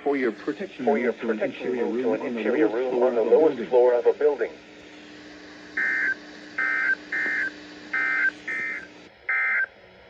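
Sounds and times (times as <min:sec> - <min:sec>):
two-tone data screech: 0:05.8 - 0:09.7.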